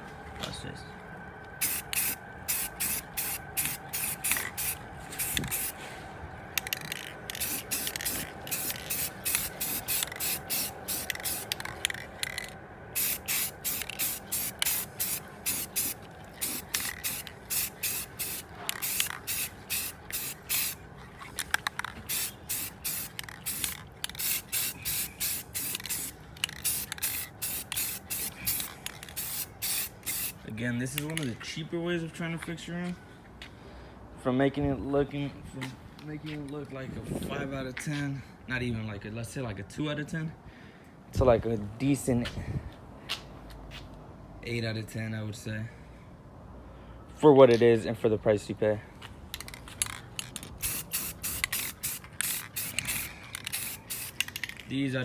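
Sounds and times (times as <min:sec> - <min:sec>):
aerosol spray paint hissing: 0:01.6 - 0:05.8, 0:07.3 - 0:11.6, 0:13.0 - 0:20.8, 0:22.1 - 0:30.4, 0:50.6 - 0:54.3.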